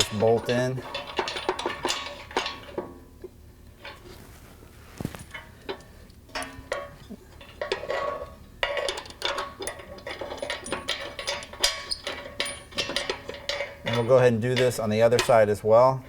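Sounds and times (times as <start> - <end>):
metal clicks and clinks: 5.3 - 15.4.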